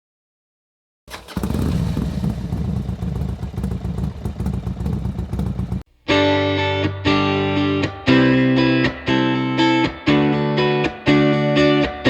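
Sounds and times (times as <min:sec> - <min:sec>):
motorcycle engine throbbing: 0:01.1 - 0:05.9.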